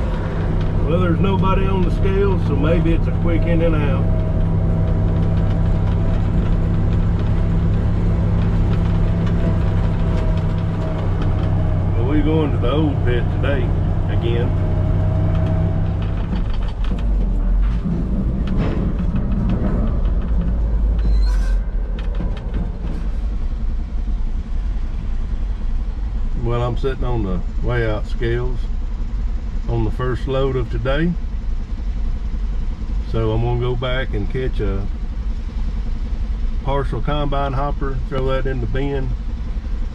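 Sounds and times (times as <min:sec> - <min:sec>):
truck engine humming: 0:00.0 - 0:39.9.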